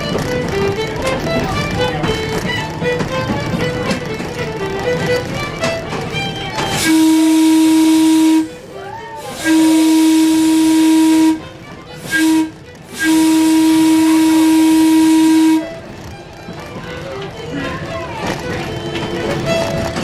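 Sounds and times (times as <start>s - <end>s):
train whistle blasts: 6.7s - 15.8s.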